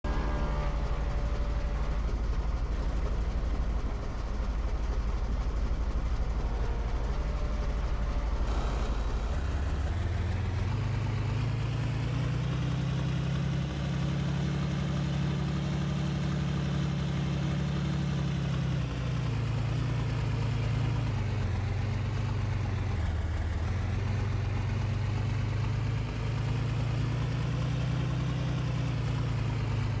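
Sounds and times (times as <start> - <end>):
motor droning: 0.0 - 2.3, 6.2 - 26.9.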